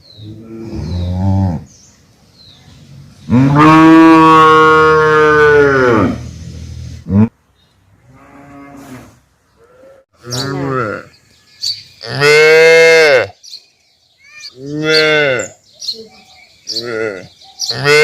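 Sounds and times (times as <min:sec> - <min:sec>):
cow mooing: 0:03.3 - 0:06.2, 0:08.1 - 0:11.1.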